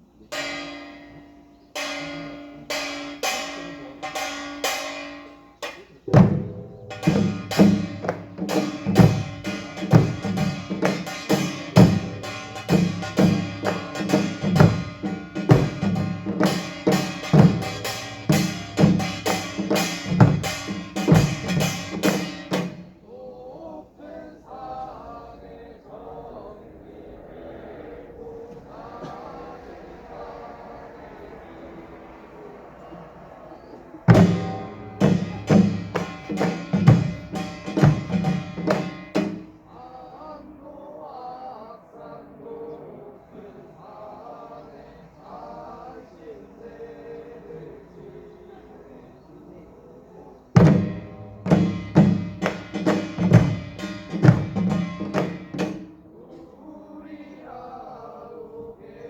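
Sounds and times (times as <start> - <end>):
drums in fast rhythm: 1.8 - 23.0, 33.9 - 39.7, 50.6 - 56.0
metal gong strikes: 6.2 - 22.5.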